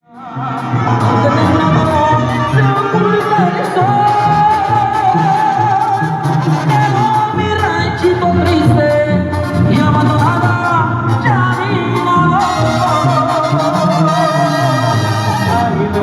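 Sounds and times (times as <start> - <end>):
band with bouncing bass: 0.1 - 16.0.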